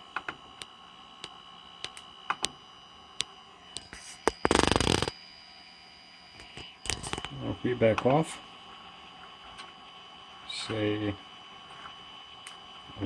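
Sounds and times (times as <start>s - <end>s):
cooling fan whining: 0.0s - 13.0s
loud buzzing rattle: 4.3s - 5.2s.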